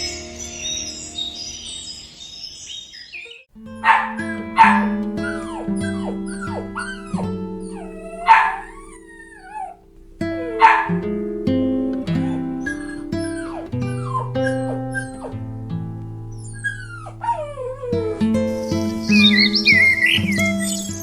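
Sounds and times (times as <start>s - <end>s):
acoustic guitar music: 0.0s - 2.3s, 3.5s - 21.0s
high chirping: 0.0s - 21.0s
dog yelping: 3.7s - 11.2s, 12.1s - 15.4s, 16.3s - 21.0s
dog barking: 3.8s - 11.2s, 12.2s - 15.4s, 16.3s - 21.0s.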